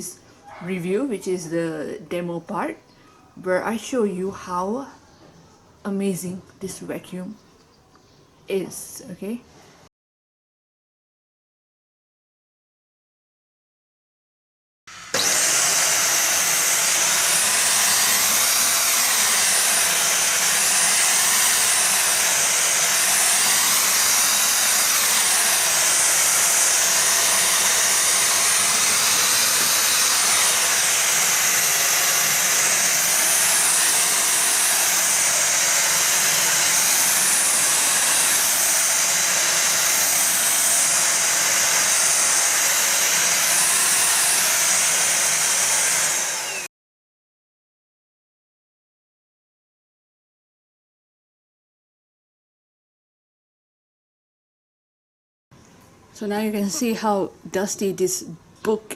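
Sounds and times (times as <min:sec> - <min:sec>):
vacuum cleaner running: 0:14.9 - 0:46.7, 0:56.2 - 0:57.2.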